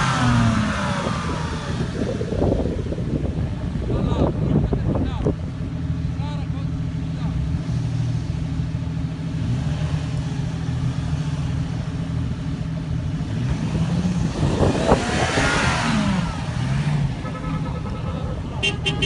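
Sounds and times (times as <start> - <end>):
vehicle engine revving hard: 0.0 - 2.7, 9.3 - 11.8, 13.1 - 19.0.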